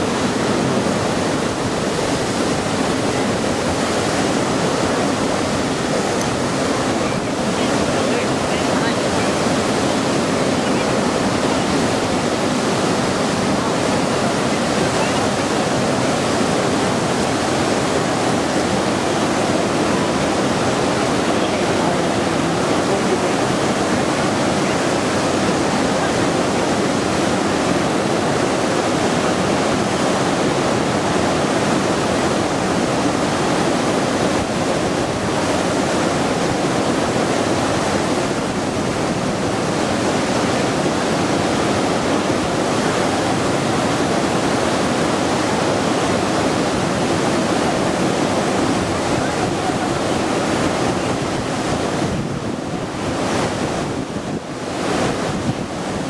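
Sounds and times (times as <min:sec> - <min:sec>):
waterfall rushing: 0:00.0 - 0:56.0.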